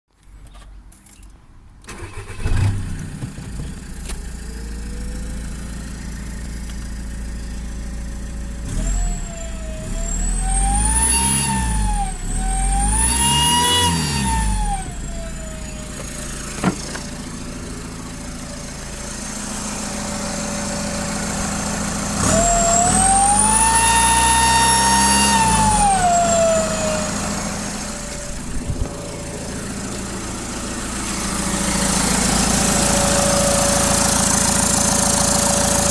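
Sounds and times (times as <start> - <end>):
diesel engine revving: 1.9 - 35.9
turbocharger whine: 4.1 - 35.9.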